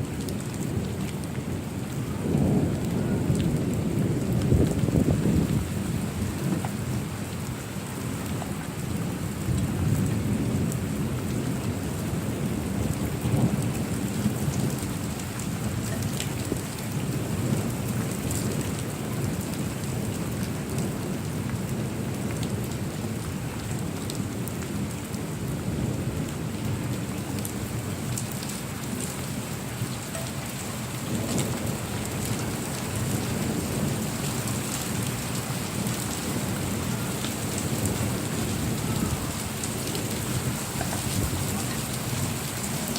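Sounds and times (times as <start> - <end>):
low rolling thunder: 0.0 - 7.6, 8.9 - 42.9
heavy rain: 0.0 - 42.9
raindrop ticks: 12.9 - 19.6, 29.8 - 33.0, 39.4 - 42.9.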